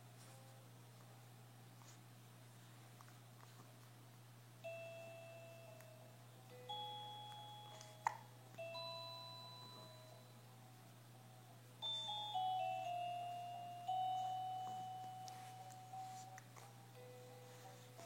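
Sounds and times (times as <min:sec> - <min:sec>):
steady low hum: 0:00.0 - 0:18.0
bell-like notes ringing: 0:08.6 - 0:10.4, 0:11.8 - 0:17.9.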